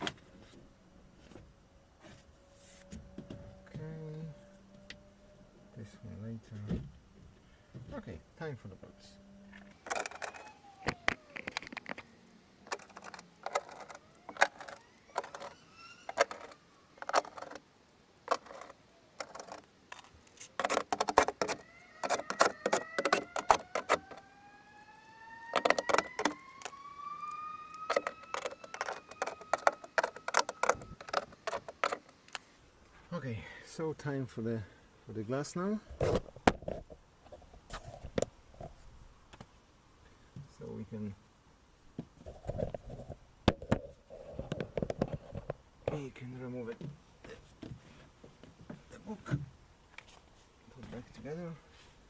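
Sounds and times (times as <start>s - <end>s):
rising squeal: 9.7s - 17.6s, 21.6s - 31.4s
hand tool metallic clicks: 18.3s - 21.6s.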